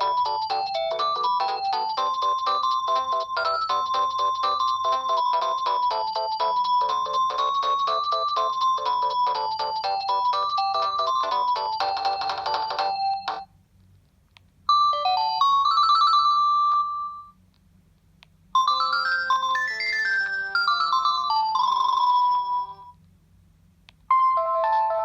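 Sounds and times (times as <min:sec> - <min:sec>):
phone ringtone melodies: 0:00.0 - 0:13.5, 0:14.7 - 0:17.4, 0:18.6 - 0:23.0, 0:24.1 - 0:25.0.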